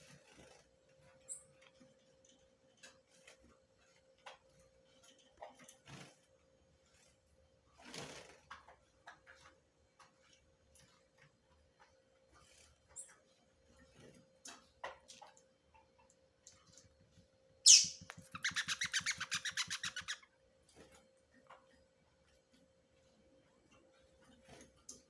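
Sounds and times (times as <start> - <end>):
rapid bird chirps: 17.6 - 20.2
bird chick sharp cry: 17.7 - 20.2.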